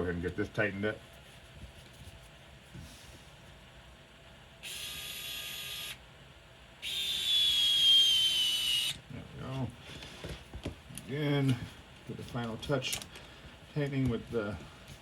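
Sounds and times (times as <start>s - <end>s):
electric screwdriver whining: 4.6s - 6.0s, 6.8s - 9.0s.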